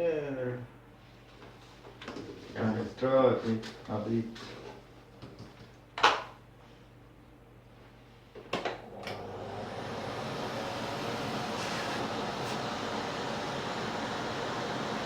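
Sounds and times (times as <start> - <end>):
vacuum cleaner motor rushing: 8.8 - 15.0.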